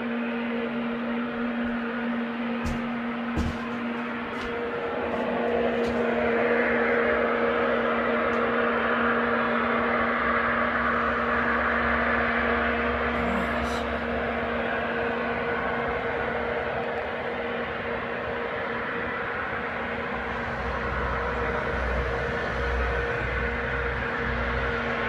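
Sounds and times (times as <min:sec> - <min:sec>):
deep rumble: 0:00.0 - 0:18.6
low droning hum in the sky: 0:00.0 - 0:25.0.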